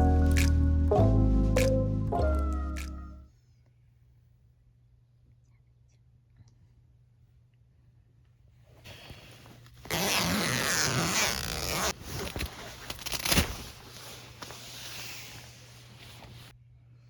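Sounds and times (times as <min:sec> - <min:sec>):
fabric rustling: 0:08.8 - 0:16.5
zipper being unzipped: 0:09.7 - 0:13.5.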